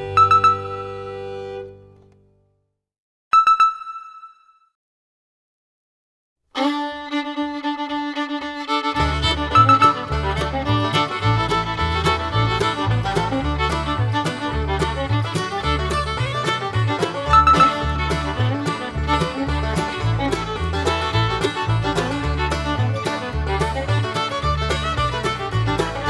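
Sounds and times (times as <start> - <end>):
steady bass beat: 9.0 - 26.0.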